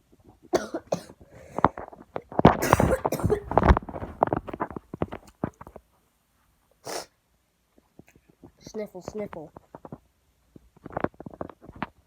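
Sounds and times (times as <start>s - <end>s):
objects rustling and clattering: 0.0s - 6.6s, 7.7s - 12.0s
person sniffing: 6.8s - 7.1s.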